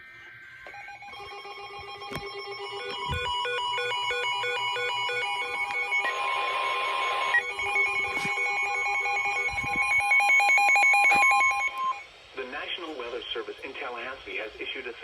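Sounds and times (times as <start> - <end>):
steady warning alarm tone: 0.0 - 12.1
rapidly alternating beeping tones: 0.6 - 12.0.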